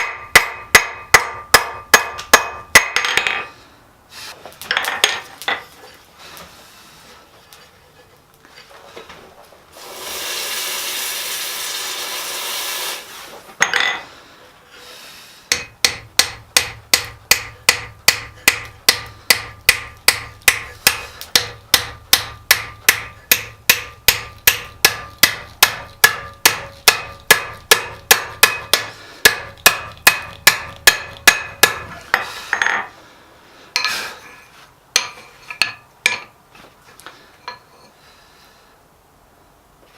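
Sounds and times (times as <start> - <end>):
hammer striking steel on anvil: 0.0 - 3.5, 15.5 - 32.9, 35.0 - 36.3
steady hiss: 9.6 - 13.6.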